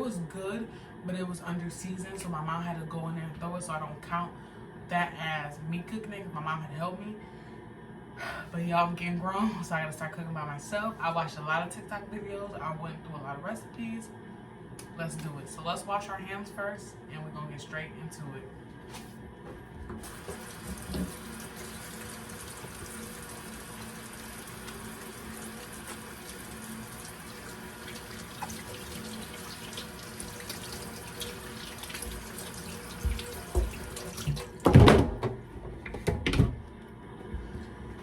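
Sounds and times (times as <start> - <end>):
hands washing under water: 20.0 - 34.6
water running from sink tap: 20.0 - 34.8.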